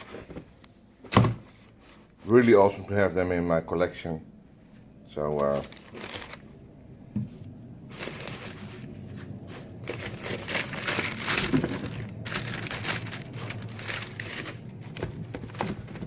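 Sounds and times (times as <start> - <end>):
paper packaging crinkling: 5.3 - 6.6, 7.8 - 16.0.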